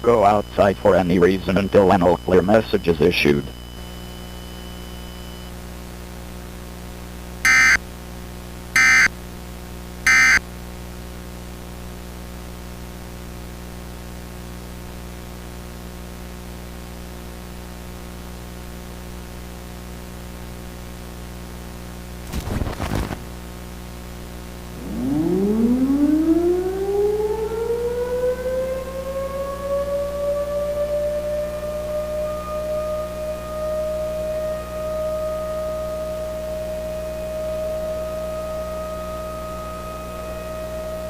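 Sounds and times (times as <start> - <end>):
electrical hum and static: 0.0 - 29.2, 29.8 - 41.0
shrill digital data bursts: 7.5 - 7.8, 10.1 - 10.4
warbling distorted sound: 24.7 - 27.2.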